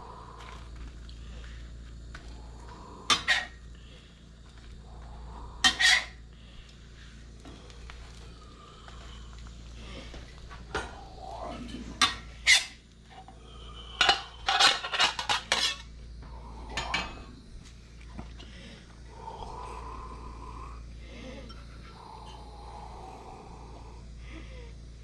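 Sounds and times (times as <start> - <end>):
utensils clinking against dishes: 14.0 - 15.9.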